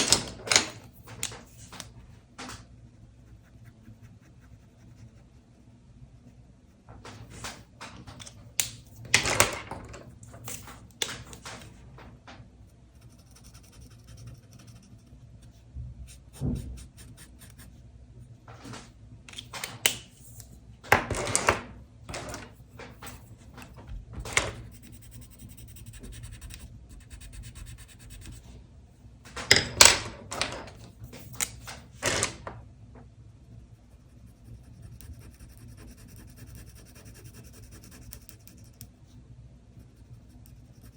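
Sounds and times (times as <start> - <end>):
drawing tool scratching paper: 12.9 - 15.2, 24.5 - 28.4, 33.9 - 38.8, 39.9 - 40.9.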